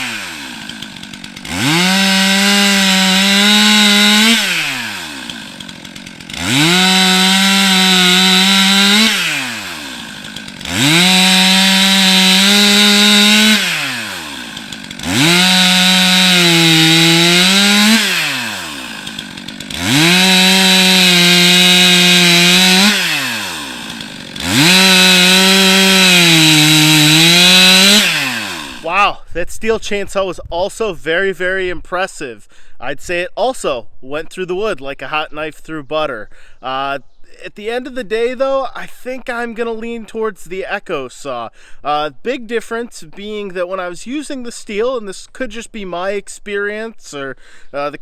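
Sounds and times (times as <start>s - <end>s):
chainsaw cutting wood: 0.0s - 29.0s.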